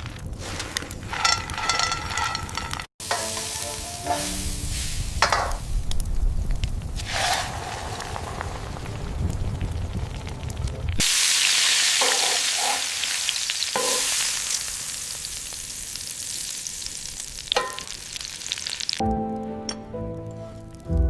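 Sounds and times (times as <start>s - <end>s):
utensils clinking on a pan: 1.1s - 4.4s, 5.2s - 5.6s, 12.0s - 12.9s, 13.8s - 14.1s, 17.5s - 18.0s
music: 3.0s - 5.0s, 19.0s - 21.0s
food sizzling in a hot pan: 3.0s - 5.9s, 7.0s - 9.0s, 11.0s - 19.0s.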